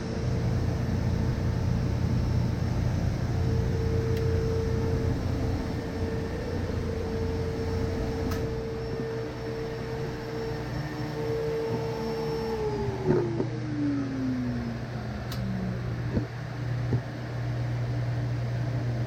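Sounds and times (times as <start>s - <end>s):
machine hum: 0.0s - 19.0s
faint click: 15.3s - 15.5s.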